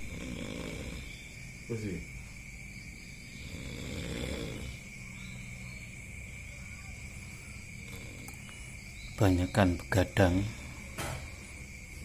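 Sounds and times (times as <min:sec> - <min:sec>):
person snoring: 0:00.0 - 0:01.2, 0:03.4 - 0:04.9
quiet breathing: 0:10.4 - 0:12.0.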